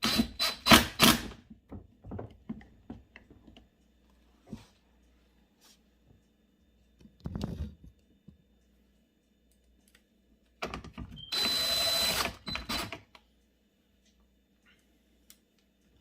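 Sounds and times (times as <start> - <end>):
power drill driving screws: 0.0 - 1.4, 11.2 - 13.0.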